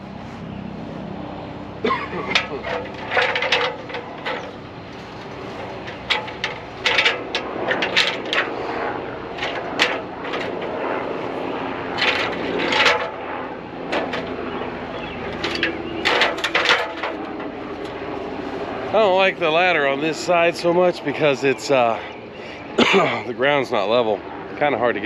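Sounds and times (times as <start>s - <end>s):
steady low hum: 0.0s - 25.0s
ladder knocking and clanking: 2.2s - 8.5s, 9.4s - 10.8s, 12.0s - 13.2s, 13.9s - 14.4s, 15.3s - 18.0s.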